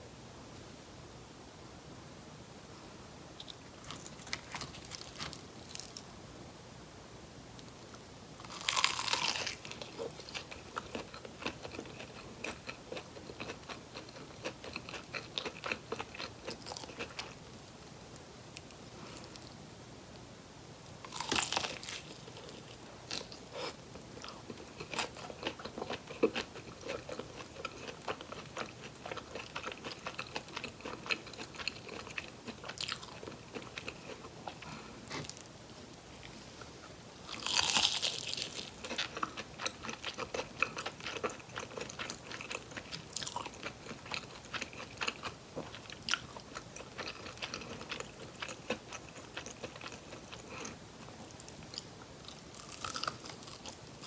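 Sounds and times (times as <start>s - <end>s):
crunchy chewing: 3.4s - 6.1s, 8.4s - 17.5s, 21.0s - 35.5s, 37.2s - 54.0s.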